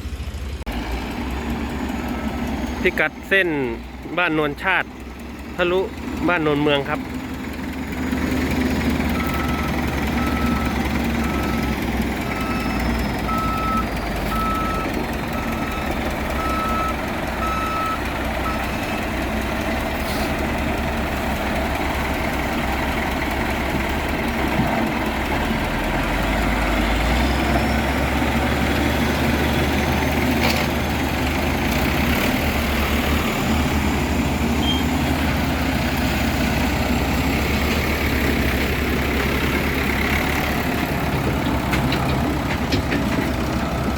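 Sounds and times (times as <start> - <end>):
diesel engine running: 0.0 - 43.9
reversing alarm beeping: 9.1 - 18.8.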